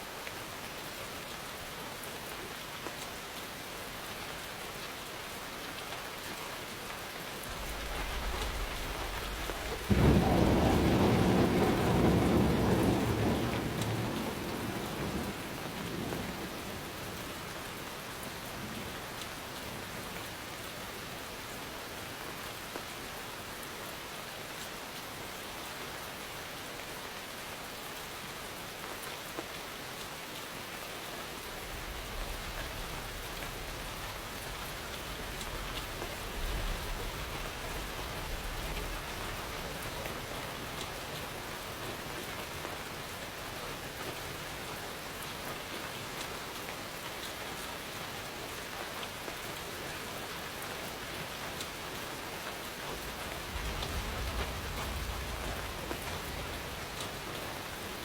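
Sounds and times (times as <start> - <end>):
steady rain pattering: 0.0 - 58.0
distant thunder rumble: 7.5 - 17.3, 31.5 - 43.5, 52.8 - 58.0.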